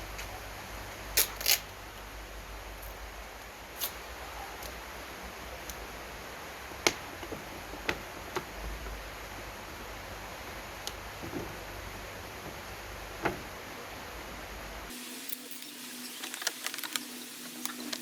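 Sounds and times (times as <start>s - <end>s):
steady hiss: 0.0s - 18.0s
hands handling thin plastic: 15.3s - 18.0s.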